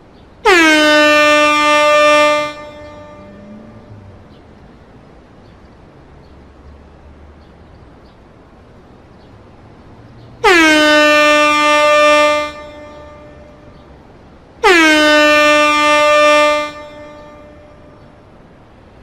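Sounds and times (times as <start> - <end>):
air horn blasts: 0.4 - 4.0, 10.4 - 13.8, 14.6 - 18.0.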